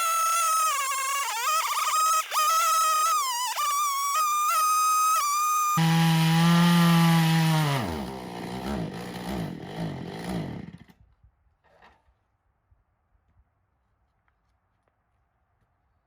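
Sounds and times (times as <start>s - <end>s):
chainsaw running: 0.0s - 11.0s.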